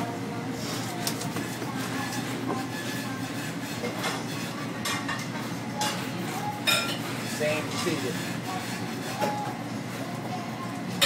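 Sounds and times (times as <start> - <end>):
steady kitchen rumble: 0.0 - 11.0
dishes and utensils clinking: 1.0 - 9.6.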